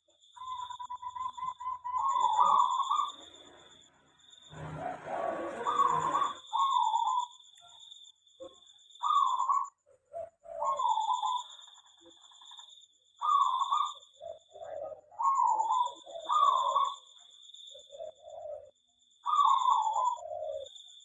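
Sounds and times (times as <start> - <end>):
doves cooing: 0.4 - 3.9, 4.5 - 7.3, 9.0 - 11.6, 13.2 - 17.0, 17.7 - 20.8.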